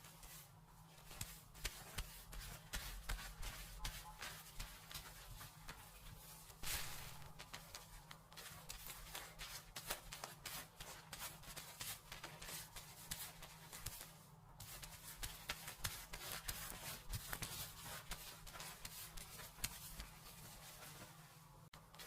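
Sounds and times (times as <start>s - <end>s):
fingers scratching through hair: 0.9s - 22.0s.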